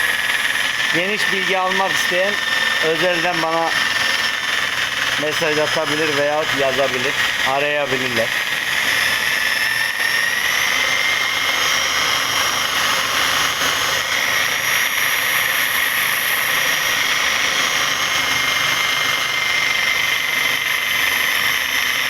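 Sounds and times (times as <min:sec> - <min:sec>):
electric drill motor whining: 0:00.0 - 0:22.0.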